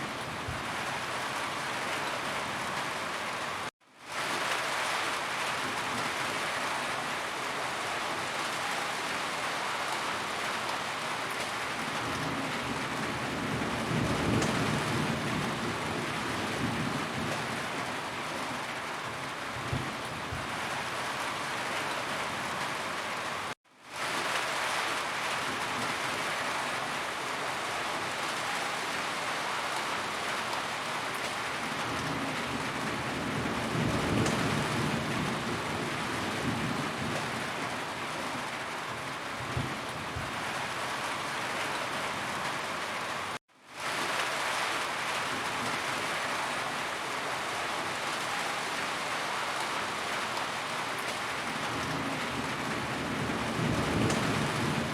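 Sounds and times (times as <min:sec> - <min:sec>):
heavy rain on a roof: 0:00.0 - 0:54.9
distant thunder rumble: 0:51.7 - 0:54.9.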